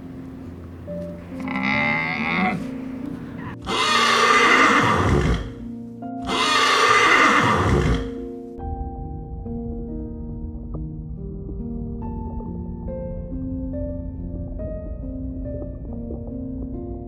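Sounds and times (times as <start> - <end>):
background music: 0.0 - 17.0
horse neighing: 1.3 - 5.6, 6.2 - 8.2.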